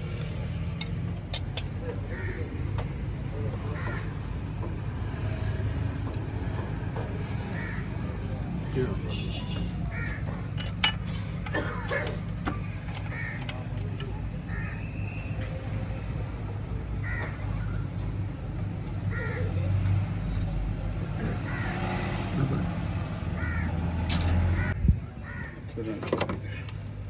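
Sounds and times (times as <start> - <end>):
crow cawing: 2.0 - 2.6, 3.7 - 4.2, 7.4 - 8.0, 9.8 - 10.4, 13.1 - 13.5, 14.4 - 14.9, 17.0 - 17.8, 19.1 - 19.6, 21.4 - 22.2, 23.4 - 25.6.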